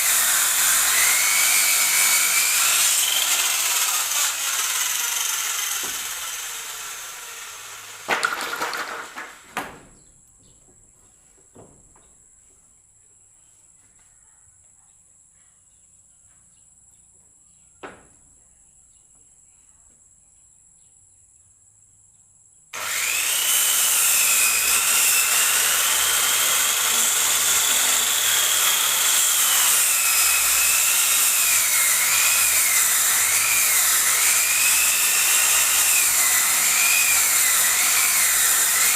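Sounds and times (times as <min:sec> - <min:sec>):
circular saw cutting wood: 0:00.0 - 0:09.4, 0:22.8 - 0:38.9
sharp knocks: 0:08.1 - 0:10.0.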